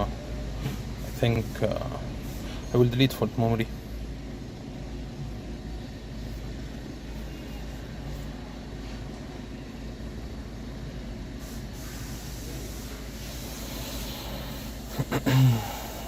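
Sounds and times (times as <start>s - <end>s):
low mechanical hum: 0.0s - 16.0s
hiss: 11.4s - 16.0s.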